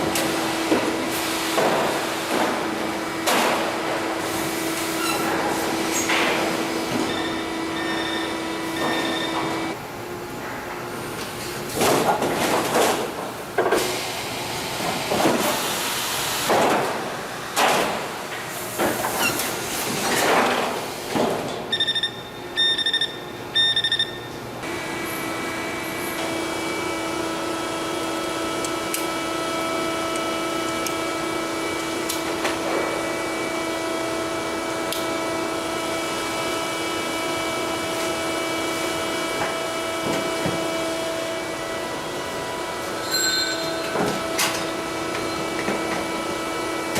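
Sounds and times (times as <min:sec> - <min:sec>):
steady machine hum: 0:00.0 - 0:12.1, 0:21.7 - 0:46.9.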